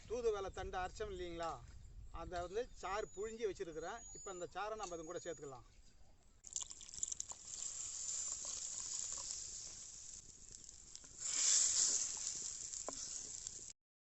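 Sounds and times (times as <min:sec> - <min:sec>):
liquid poured into pan: 0:06.4 - 0:13.8
spices sizzling in a hot pan: 0:06.5 - 0:13.8.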